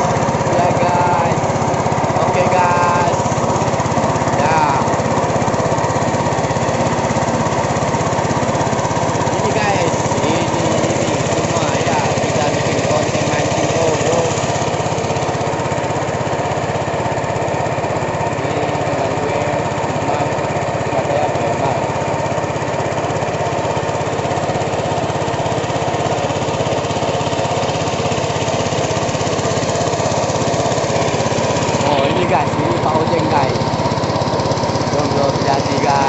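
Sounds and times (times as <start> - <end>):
small engine running: 0.0 - 36.0.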